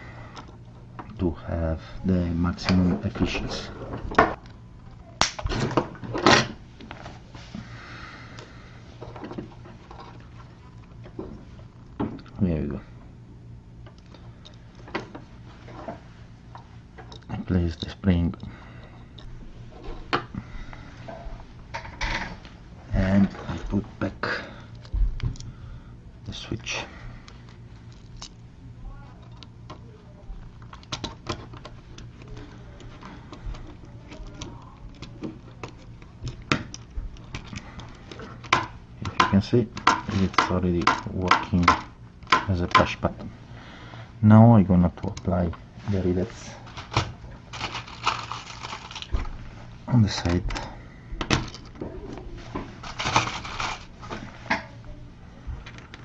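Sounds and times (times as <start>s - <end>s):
low steady hum: 0.0s - 56.0s
rustling: 45.8s - 49.8s
small parts clicking and rattling: 46.7s - 49.2s, 52.8s - 53.9s.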